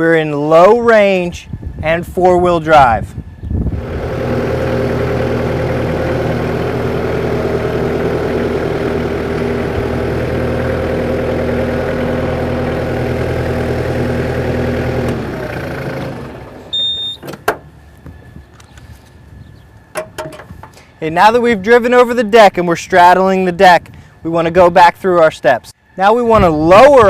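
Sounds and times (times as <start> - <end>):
tractor diesel engine running: 2.0 - 22.2
short high beep: 16.7 - 17.2.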